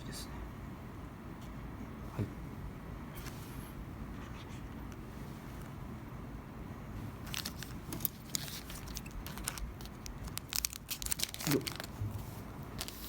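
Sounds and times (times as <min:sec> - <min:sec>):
wrapper tearing and crinkling: 0:07.2 - 0:12.0, 0:12.8 - 0:13.0.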